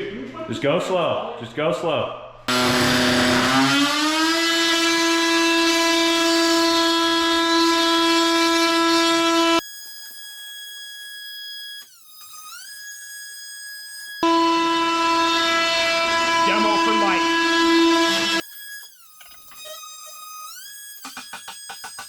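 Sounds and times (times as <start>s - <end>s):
higher sliding tone: 14.2s - 18.4s
steady horn-like note: 14.2s - 18.4s.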